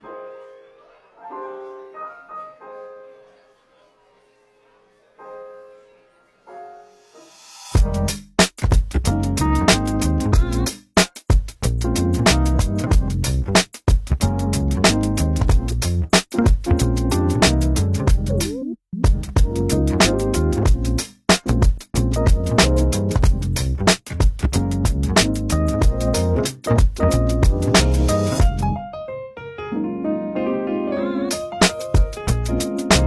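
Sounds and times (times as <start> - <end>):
slow piano notes: 0.0 - 8.1, 25.6 - 33.0
background music with steady beat: 7.6 - 28.8, 31.3 - 33.0.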